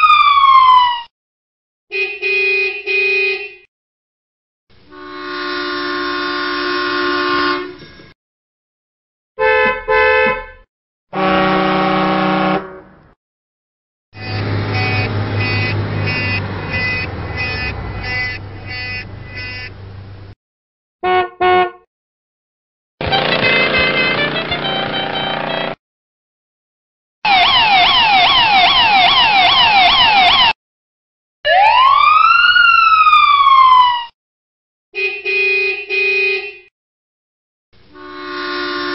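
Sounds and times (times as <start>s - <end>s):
siren wailing: 0.0s - 1.1s, 14.2s - 19.7s, 27.2s - 30.6s, 31.4s - 34.1s
vehicle horn honking: 1.9s - 3.7s, 4.9s - 8.0s, 9.4s - 13.0s, 14.2s - 19.8s, 21.0s - 21.9s, 23.0s - 25.8s, 35.0s - 36.7s, 37.9s - 38.9s.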